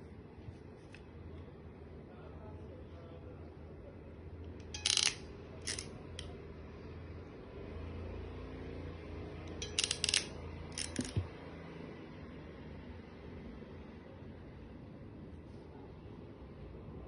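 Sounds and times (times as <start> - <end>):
crimp tool clicking and snipping: 9.6 - 11.2.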